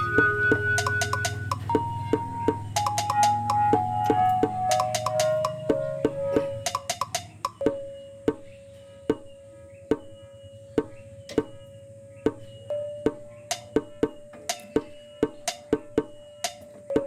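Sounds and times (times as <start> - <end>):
held tone: 0.0 - 8.0
wood-block percussion beat: 0.0 - 8.5, 9.9 - 10.2, 12.3 - 12.5, 13.1 - 17.0.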